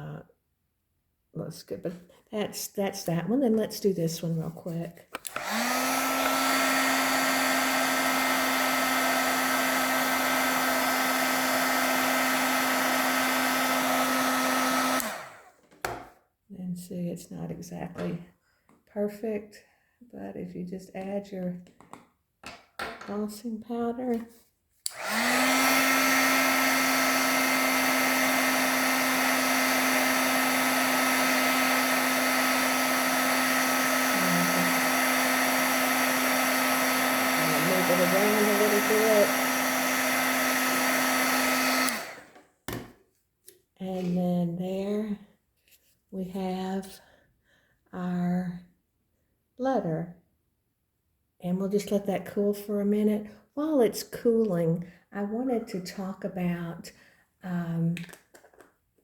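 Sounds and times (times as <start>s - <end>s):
heat gun fan whine: 5.2s - 15.5s, 24.9s - 42.8s.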